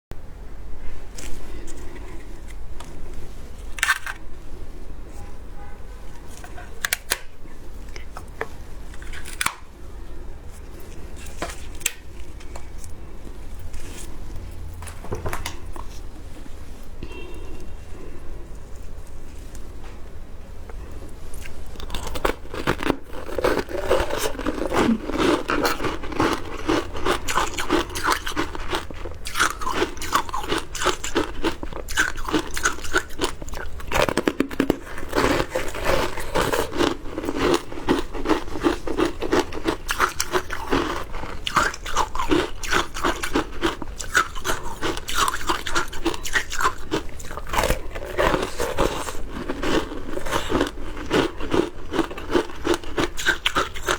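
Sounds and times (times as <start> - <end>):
ice being chewed crunching: 7.8 - 9.7, 21.3 - 53.9.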